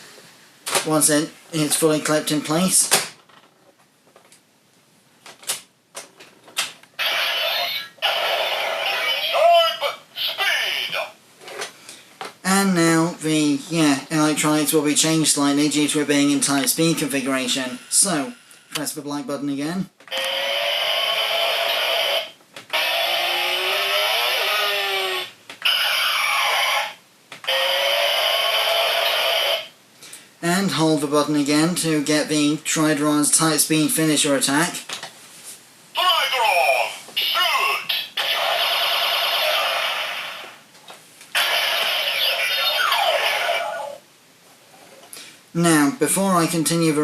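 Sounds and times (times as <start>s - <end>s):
electronic toy sound effect: 7.0s - 11.1s, 20.1s - 29.7s, 36.0s - 40.6s, 41.4s - 44.0s.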